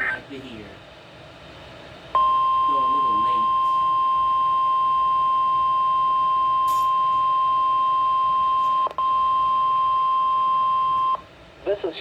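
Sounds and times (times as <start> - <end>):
high-pitched warning alarm beep: 2.2 - 11.2.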